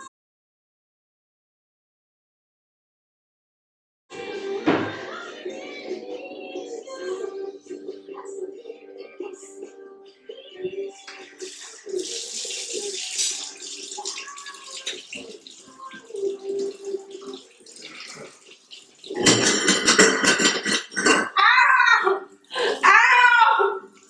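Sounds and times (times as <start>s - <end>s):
water running into a sink: 11.1s - 21.2s.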